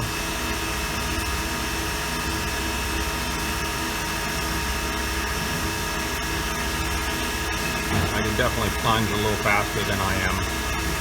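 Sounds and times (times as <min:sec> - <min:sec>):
machine spindle whining: 0:06.6 - 0:11.0.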